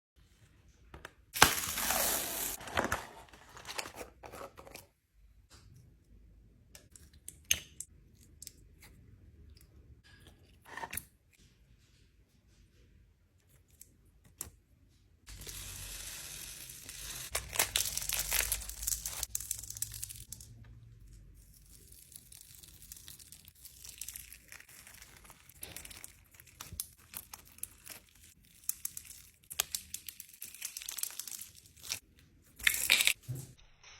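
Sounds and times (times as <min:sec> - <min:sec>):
slime squishing and crackling: 0:16.8 - 0:20.4, 0:21.4 - 0:32.0.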